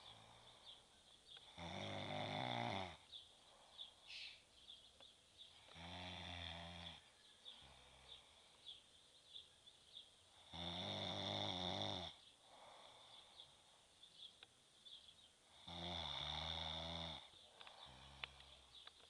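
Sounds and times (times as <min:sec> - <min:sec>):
person snoring: 0:01.5 - 0:03.1, 0:05.7 - 0:08.2, 0:10.4 - 0:13.2, 0:15.5 - 0:18.4
breathy exhale: 0:12.5 - 0:13.8.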